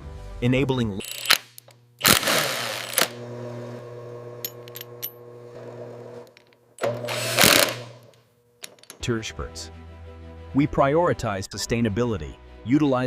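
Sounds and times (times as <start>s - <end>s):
machine humming: 2.0s - 9.0s.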